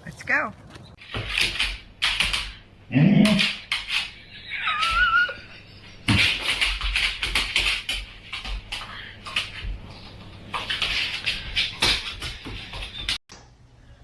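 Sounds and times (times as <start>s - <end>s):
dog claws on hard floor: 0.7s - 2.6s, 6.1s - 13.2s.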